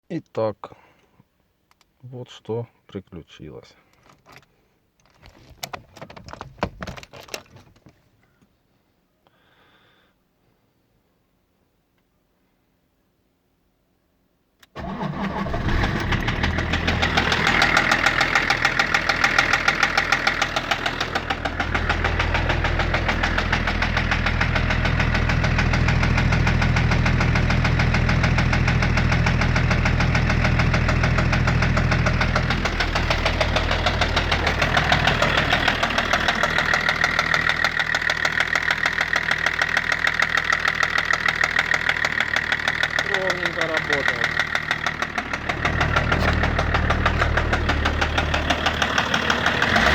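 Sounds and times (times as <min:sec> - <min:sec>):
diesel engine idling with knock: 0:14.8 - 0:49.9.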